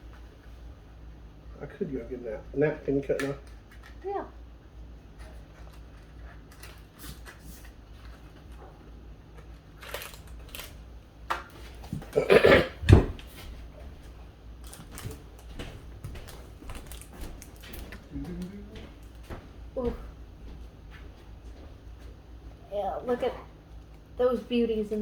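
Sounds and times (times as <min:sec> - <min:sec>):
package rustle: 0:09.4 - 0:10.8, 0:14.6 - 0:15.5, 0:16.2 - 0:18.1
snack package crinkling: 0:09.4 - 0:10.8, 0:14.6 - 0:15.5, 0:16.3 - 0:18.1.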